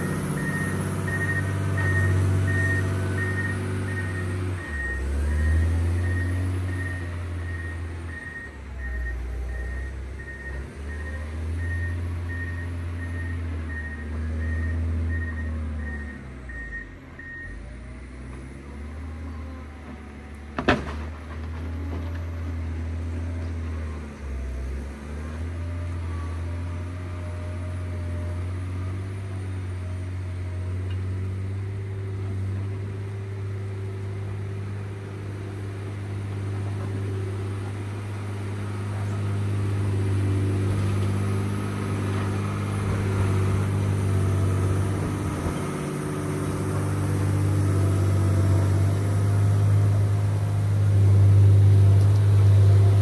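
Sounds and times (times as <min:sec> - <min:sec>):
reversing alarm beeping: 0:00.0 - 0:17.6
diesel engine running under load: 0:00.0 - 0:53.0.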